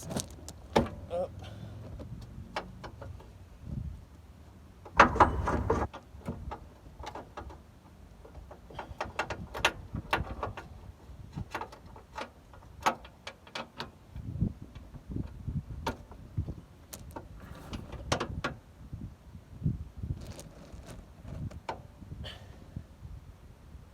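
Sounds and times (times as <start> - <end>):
metal clattering scrape: 5.0 - 5.9, 17.4 - 18.2.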